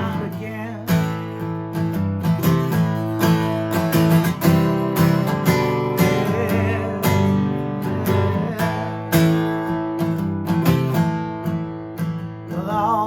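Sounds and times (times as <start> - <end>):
person singing: 0.0 - 1.2, 5.5 - 9.4, 12.5 - 13.0
acoustic guitar strumming: 0.0 - 13.0.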